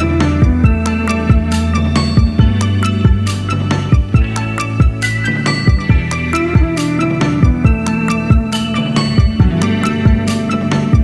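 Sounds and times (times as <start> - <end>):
soft electronic music with drum beat: 0.0 - 11.0.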